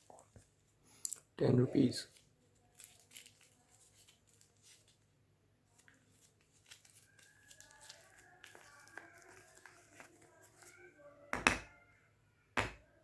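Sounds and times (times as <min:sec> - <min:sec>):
wrapper crinkling and tearing: 0:02.7 - 0:05.0, 0:06.1 - 0:10.1.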